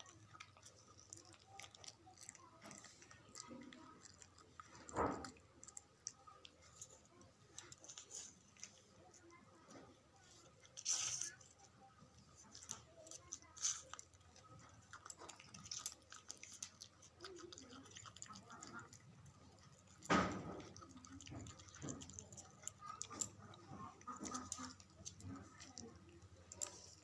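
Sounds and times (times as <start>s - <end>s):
puppy chewing and eating: 0.0s - 27.0s
thump: 20.1s - 20.6s.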